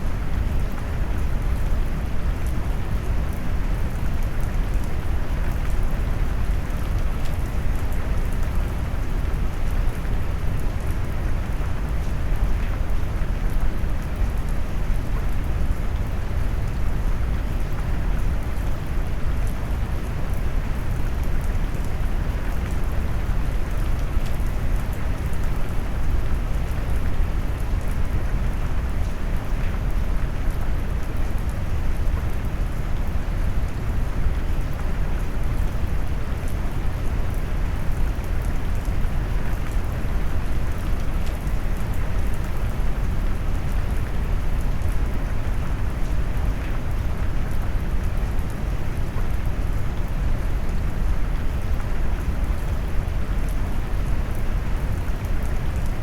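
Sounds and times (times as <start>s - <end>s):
steady rain: 0.0s - 56.0s
raindrops pattering: 2.3s - 56.0s.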